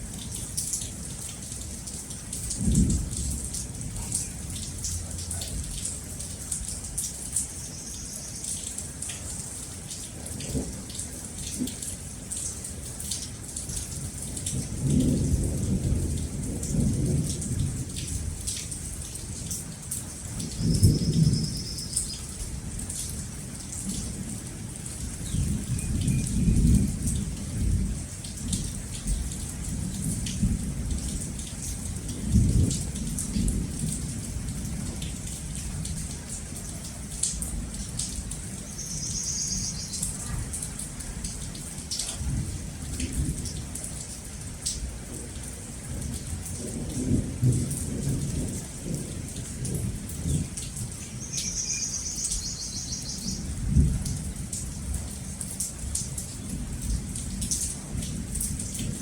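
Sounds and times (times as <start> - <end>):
heavy rain pattering: 0.0 - 59.0
thunder rumbling: 2.6 - 5.7, 25.3 - 28.1.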